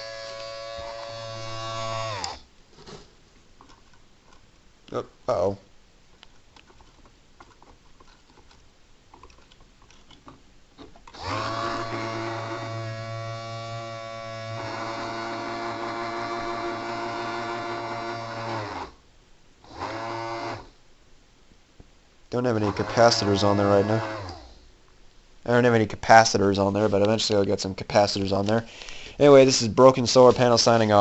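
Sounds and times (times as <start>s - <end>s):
small electric motor buzzing: 0.0s - 2.5s, 11.1s - 19.0s, 19.7s - 20.7s, 22.6s - 24.6s.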